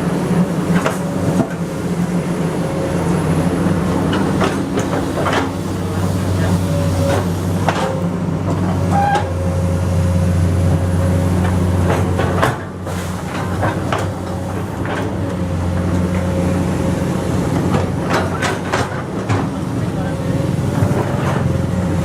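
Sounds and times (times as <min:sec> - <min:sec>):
excavator diesel engine running: 0:00.0 - 0:22.0
machine clanks and knocks: 0:04.0 - 0:09.4, 0:11.4 - 0:16.4, 0:17.6 - 0:20.1.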